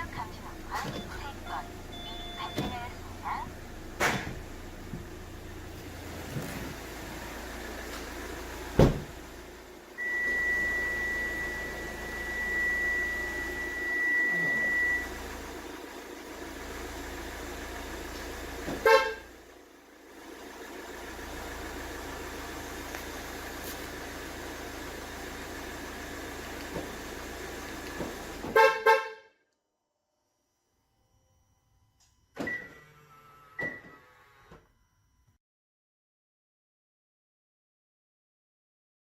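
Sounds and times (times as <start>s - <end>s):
car horn chirp: 1.0s - 3.2s, 18.7s - 19.4s, 28.5s - 29.4s, 32.4s - 34.8s
high-pitched electronic beep: 1.9s - 3.0s, 10.0s - 15.1s.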